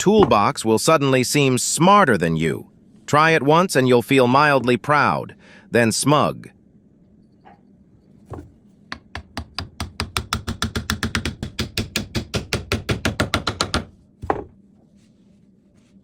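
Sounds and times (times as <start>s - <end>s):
sharp knocks: 0.0s - 0.5s.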